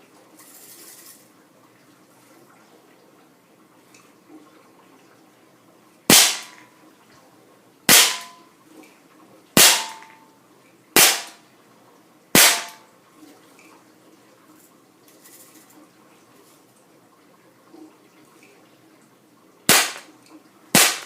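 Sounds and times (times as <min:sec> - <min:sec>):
air pistol shots: 0:06.1 - 0:06.6, 0:07.9 - 0:08.4, 0:09.6 - 0:10.2, 0:11.0 - 0:11.4, 0:12.4 - 0:12.8, 0:19.7 - 0:20.1, 0:20.8 - 0:21.0.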